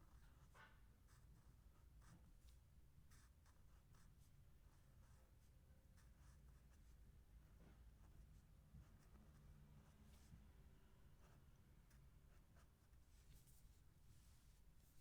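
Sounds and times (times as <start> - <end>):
low room rumble: 0.0 - 15.0
pen scratching on paper: 0.1 - 2.3, 3.1 - 5.4, 6.0 - 6.9.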